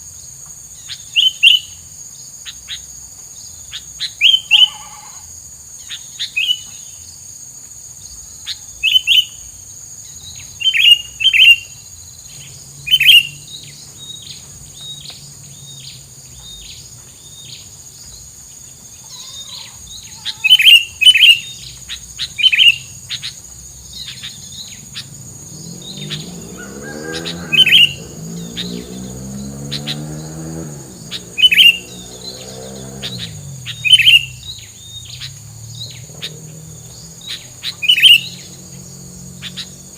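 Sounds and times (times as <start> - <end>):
high insect whine: 0.0 - 39.9
songbird chirping: 0.0 - 39.9
engine passing by: 10.3 - 20.4, 21.2 - 39.9.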